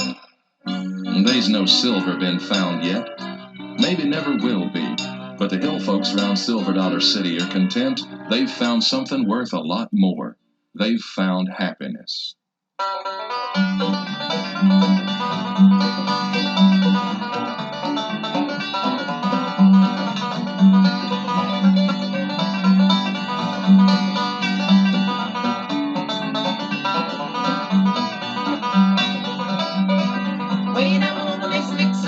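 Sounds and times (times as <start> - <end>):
string band with banjo and guitar: 0.0 - 11.8, 12.8 - 32.0.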